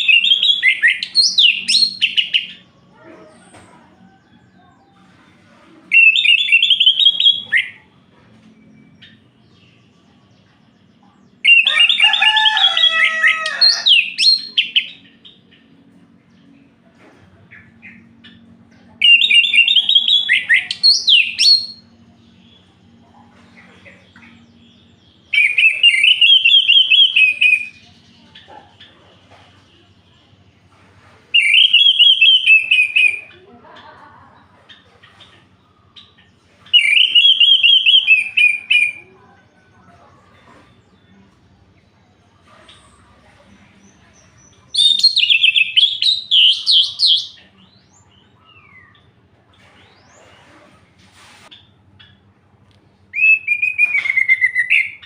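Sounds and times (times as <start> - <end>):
thrush singing whistled phrases: 25.4 - 27.8, 31.4 - 33.2, 36.8 - 39.0, 53.1 - 55.0.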